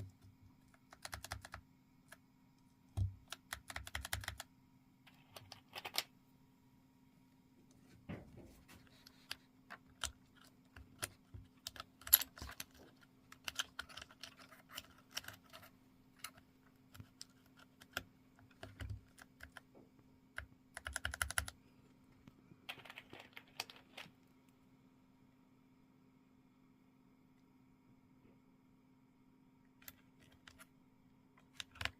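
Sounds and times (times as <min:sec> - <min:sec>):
typing on mechanical keyboard: 0:00.0 - 0:02.2, 0:03.0 - 0:04.5, 0:05.1 - 0:06.1, 0:08.9 - 0:19.7, 0:20.3 - 0:21.6, 0:22.6 - 0:24.2, 0:31.4 - 0:31.9.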